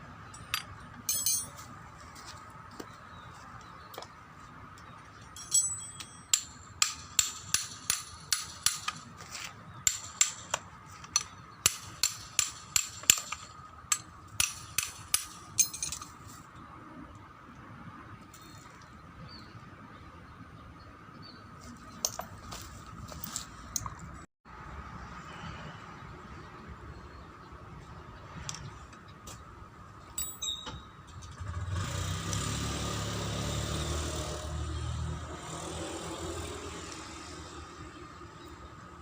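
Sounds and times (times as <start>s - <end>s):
hammer striking metal: 0.4s - 1.6s, 5.4s - 9.0s, 11.2s - 16.0s.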